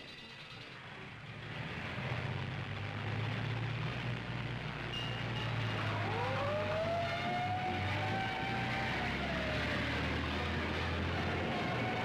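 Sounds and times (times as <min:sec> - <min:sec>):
film soundtrack hiss: 0:00.7 - 0:12.0
fire engine rumbling: 0:01.2 - 0:08.2.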